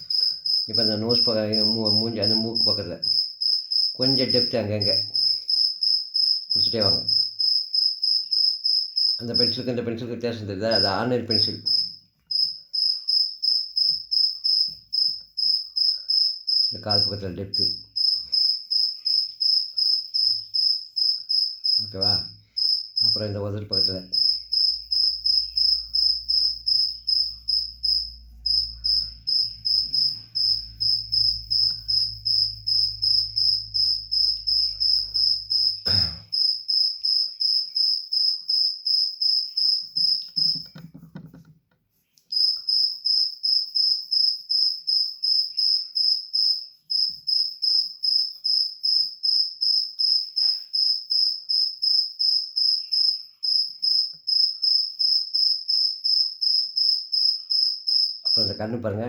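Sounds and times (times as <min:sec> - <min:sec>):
cricket chirping: 0:00.0 - 0:41.4, 0:42.1 - 0:59.0
low hum: 0:27.2 - 0:35.8
knock: 0:40.0 - 0:41.6.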